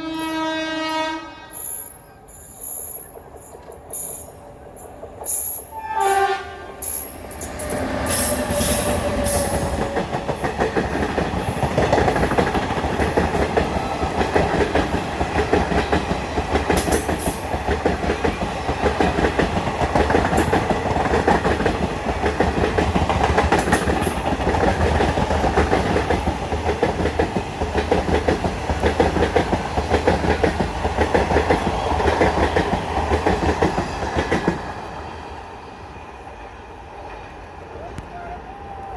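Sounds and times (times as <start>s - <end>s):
locomotive horn: 0.0s - 1.6s, 5.7s - 6.8s
train wheel rumble: 2.5s - 38.9s
clickety-clack over rail joints: 6.1s - 34.8s.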